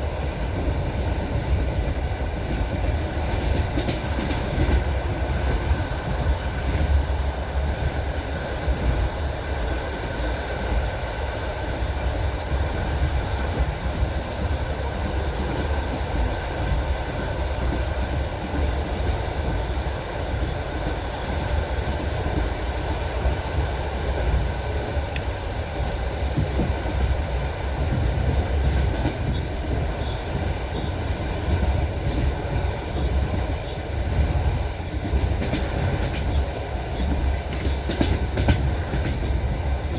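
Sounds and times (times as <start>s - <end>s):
low train rumble: 0.0s - 39.9s
train wheels clattering over joints: 23.2s - 39.9s.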